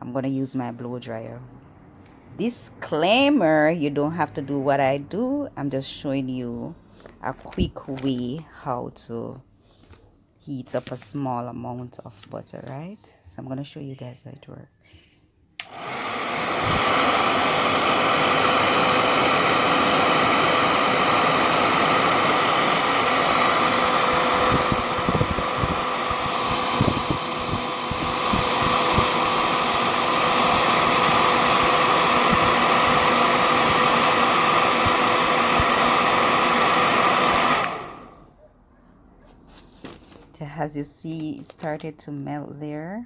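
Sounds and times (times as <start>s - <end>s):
blow dryer running: 15.6s - 38.3s.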